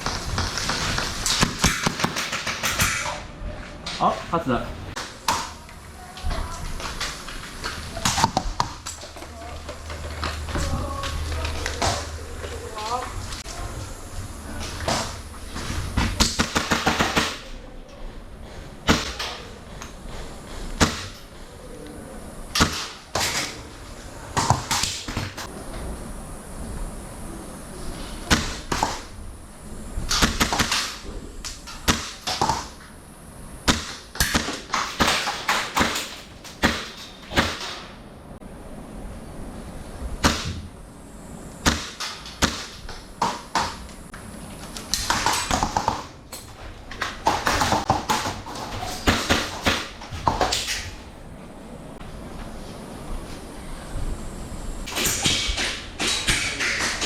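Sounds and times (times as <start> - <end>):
airsoft gunfire: 1.2 - 3.1, 16.2 - 17.5, 30.1 - 31.0, 41.6 - 43.8.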